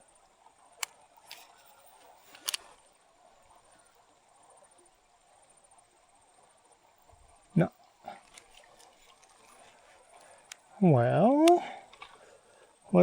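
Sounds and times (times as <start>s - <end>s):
faint steady hiss: 0.0s - 13.0s
sharp clicks: 2.3s - 2.7s, 11.4s - 12.2s.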